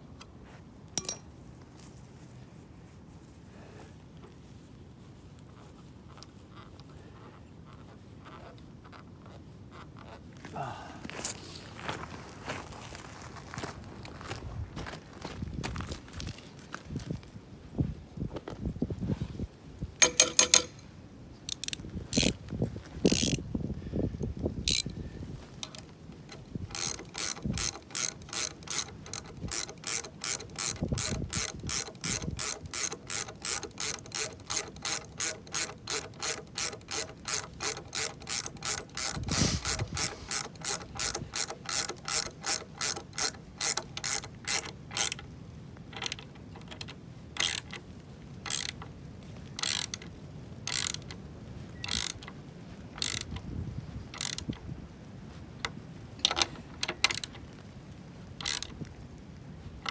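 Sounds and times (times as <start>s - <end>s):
ratchet wrench clicking: 1.0s - 1.2s, 20.0s - 20.8s, 21.5s - 22.4s, 23.1s - 23.4s, 24.6s - 25.0s, 25.6s - 45.2s, 46.0s - 47.8s, 48.5s - 48.9s, 49.6s - 50.1s, 50.7s - 51.2s, 51.8s - 52.3s, 53.0s - 53.4s, 54.2s - 54.6s, 56.2s - 57.4s, 58.4s - 58.7s.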